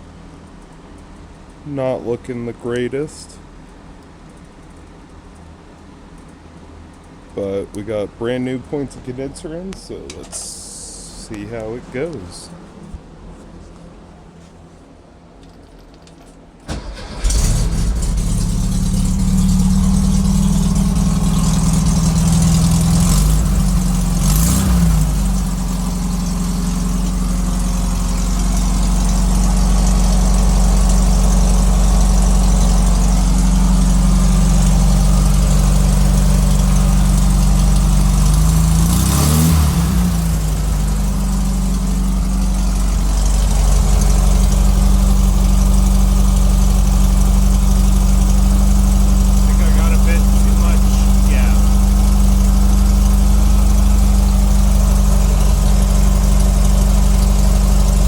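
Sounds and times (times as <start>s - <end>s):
car engine idling: 7.1s - 13.7s, 16.6s - 58.0s
car engine cranking and starting: 15.4s - 58.0s
car engine revving: 16.7s - 58.0s.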